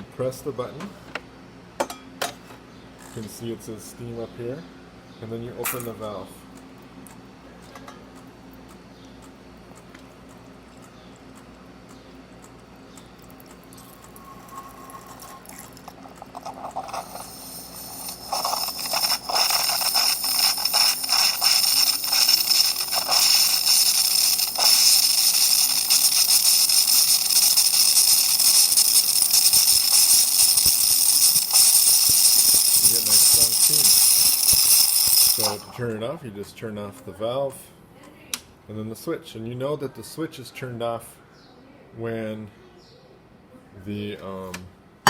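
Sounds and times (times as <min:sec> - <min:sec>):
espresso machine steam wand hissing: 0:13.4 - 0:35.8
steam pops: 0:15.6 - 0:35.8.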